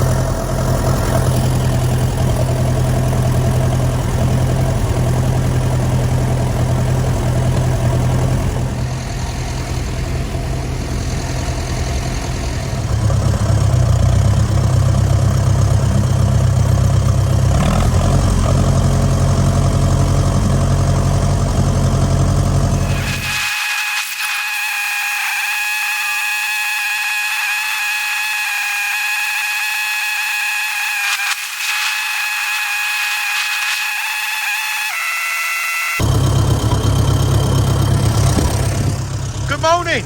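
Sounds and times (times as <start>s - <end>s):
engine running at low revs: 0.0s - 23.4s, 36.0s - 40.0s.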